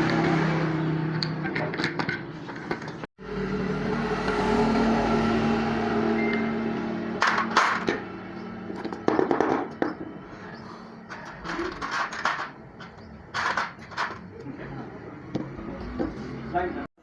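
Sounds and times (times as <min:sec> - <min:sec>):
metal clinking and clattering: 0:11.0 - 0:14.3.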